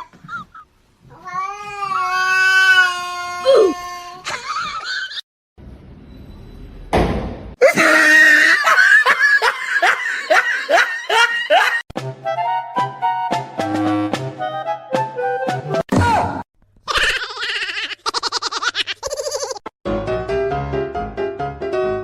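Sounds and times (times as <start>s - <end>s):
person laughing hard: 7.6s - 11.8s
music: 12.0s - 15.9s, 19.9s - 22.0s.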